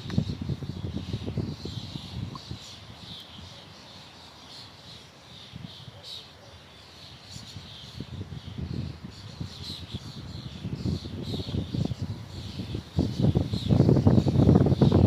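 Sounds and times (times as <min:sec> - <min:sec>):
wind gusting on microphone: 0:00.0 - 0:03.6, 0:07.3 - 0:15.0
small birds chirping: 0:00.0 - 0:15.0.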